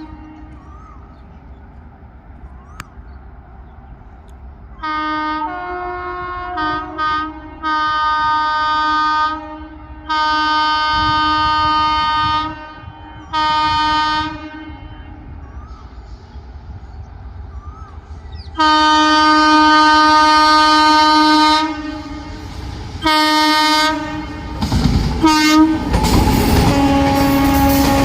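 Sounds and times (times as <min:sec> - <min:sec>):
train horn blasts: 0:00.0 - 0:00.6, 0:04.8 - 0:15.4, 0:18.6 - 0:28.0
low rumble of running train: 0:00.0 - 0:28.0.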